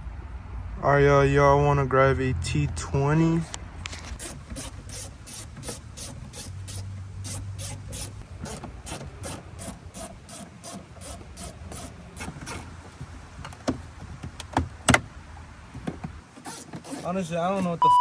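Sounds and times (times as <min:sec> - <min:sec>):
ratchet clicking rapidly: 0:04.2 - 0:12.7.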